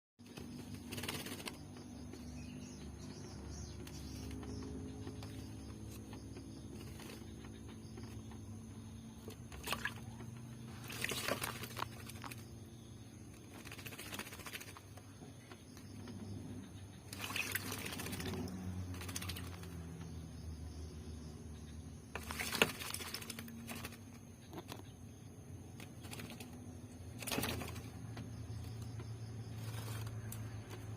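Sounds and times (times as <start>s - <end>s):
bird splashing in water: 9.3s - 12.6s, 13.3s - 14.9s, 17.1s - 19.9s, 22.1s - 24.2s, 27.2s - 28.0s.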